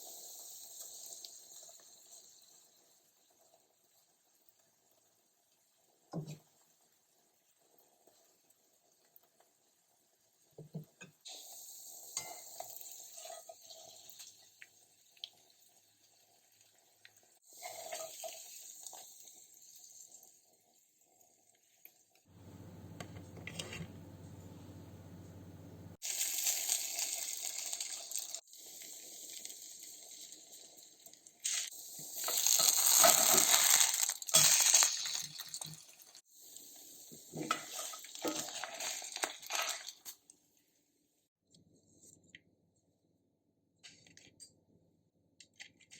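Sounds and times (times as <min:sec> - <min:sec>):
steady low hum: 0:22.4 - 0:26.0.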